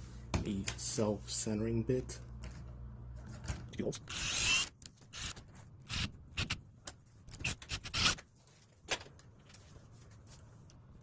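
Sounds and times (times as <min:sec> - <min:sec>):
drill bit boring into wood: 0:04.1 - 0:05.3.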